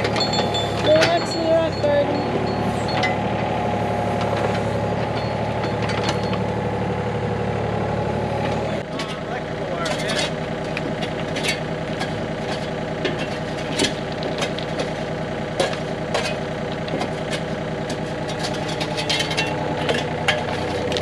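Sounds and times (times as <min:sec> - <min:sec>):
sharp knocks and clinks: 0:00.0 - 0:03.2, 0:04.2 - 0:06.5
engine idling: 0:00.0 - 0:21.0.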